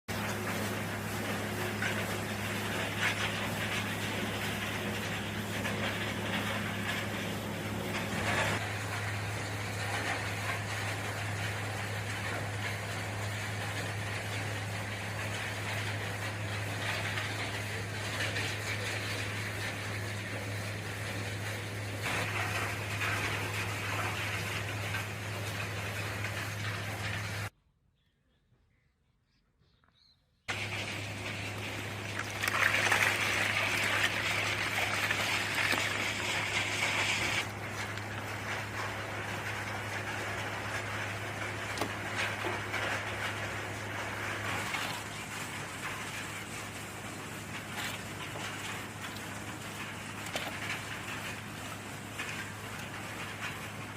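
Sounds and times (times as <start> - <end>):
low machine hum: 0.1 - 27.5, 30.5 - 53.9
machinery low hum: 30.5 - 53.9.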